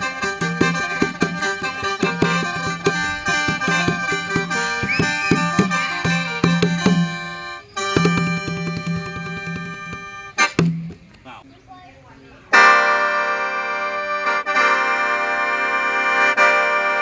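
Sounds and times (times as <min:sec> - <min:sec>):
mouth organ playing chords: 0:00.0 - 0:11.4, 0:12.5 - 0:17.0
percussion beats: 0:00.0 - 0:11.4.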